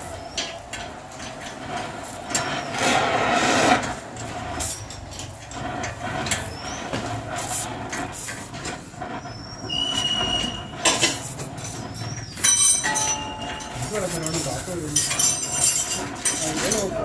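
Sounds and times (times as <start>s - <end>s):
high metal squeals: 5.9s - 7.8s, 8.9s - 17.0s
sheet metal clanking and scraping: 10.0s - 17.0s.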